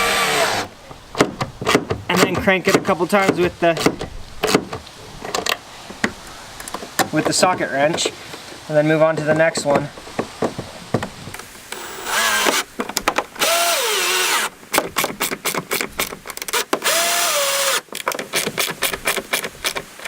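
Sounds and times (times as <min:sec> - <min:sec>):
power drill driving screws: 0:00.0 - 0:00.7, 0:11.4 - 0:12.7, 0:13.4 - 0:14.5, 0:16.5 - 0:17.9.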